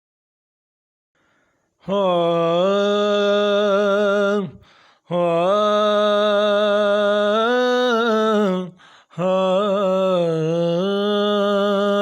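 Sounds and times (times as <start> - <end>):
intake of breath: 1.2 - 1.8, 4.6 - 5.1, 8.8 - 9.2.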